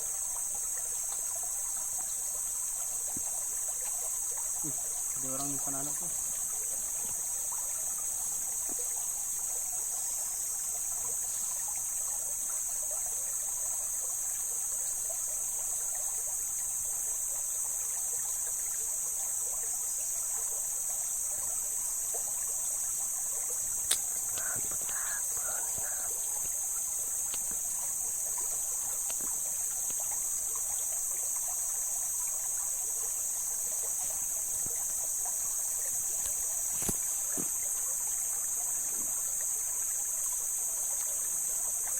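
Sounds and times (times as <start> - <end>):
insects chorus: 0.0 - 41.9
river water flowing over rocks: 0.0 - 41.9
sharp click: 23.9 - 25.0.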